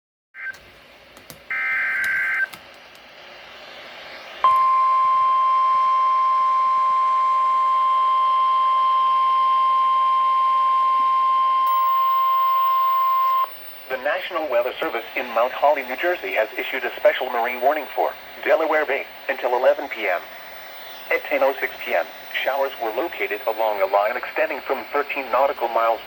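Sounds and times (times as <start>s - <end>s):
receiver hiss: 0.4s - 26.0s
steady loud alarm tone: 4.4s - 13.5s.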